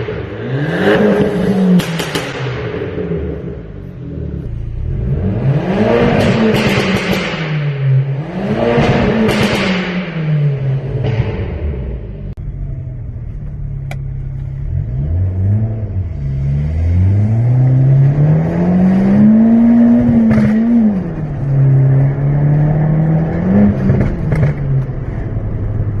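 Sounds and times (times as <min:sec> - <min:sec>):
exhaust cracks: 0:00.0 - 0:15.3, 0:19.1 - 0:22.1
car engine accelerating: 0:00.0 - 0:26.0.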